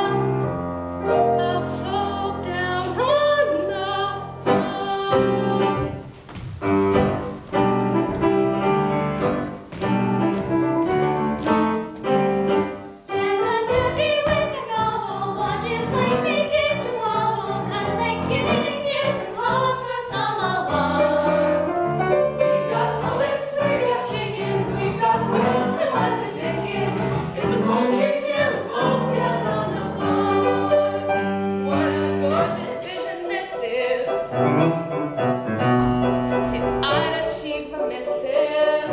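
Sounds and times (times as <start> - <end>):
instrumental accompaniment: 0.0 - 38.9
group of voices singing: 13.1 - 34.4.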